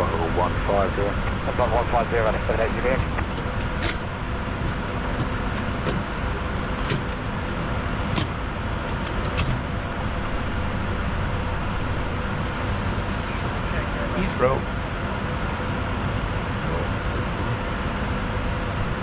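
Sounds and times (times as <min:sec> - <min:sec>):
faint steady tones: 0:00.0 - 0:08.6
jet cockpit rumble and airflow: 0:00.0 - 0:19.0.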